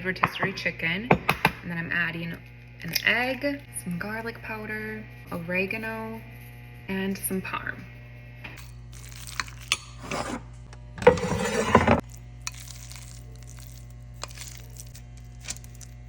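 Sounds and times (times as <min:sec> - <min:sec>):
utensil scraping a bowl: 0:10.0 - 0:12.6.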